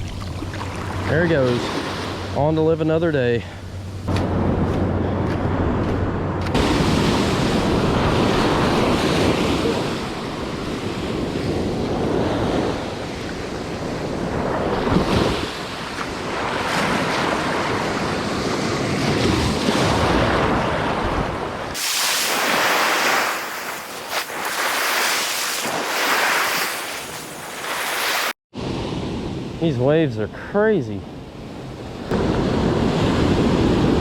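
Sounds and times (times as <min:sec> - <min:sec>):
ocean surf breaking: 0:00.0 - 0:34.0
wind buffeting microphone: 0:03.6 - 0:21.8.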